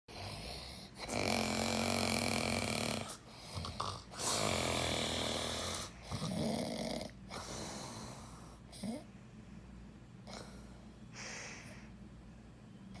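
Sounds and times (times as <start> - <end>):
person snoring: 0.1 - 9.0.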